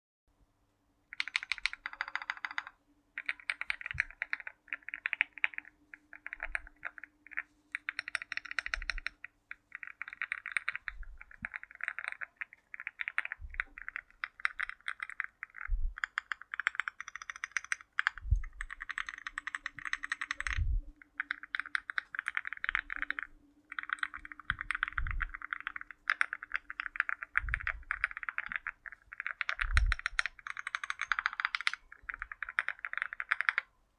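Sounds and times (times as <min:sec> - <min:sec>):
mechanical keyboard typing: 0:01.2 - 0:33.7.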